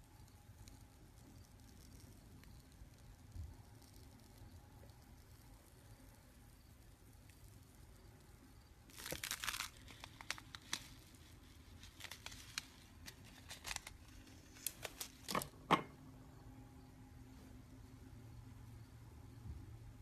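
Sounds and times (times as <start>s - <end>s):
slime crackling and popping: 8.8s - 15.3s.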